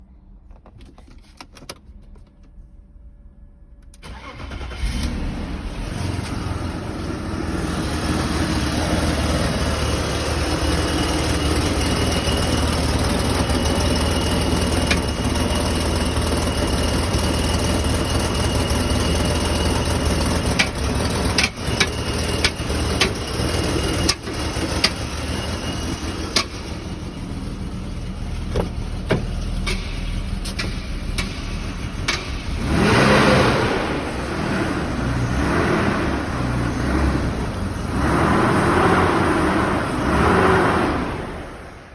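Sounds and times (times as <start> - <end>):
engine starting and idling: 3.8 - 35.2.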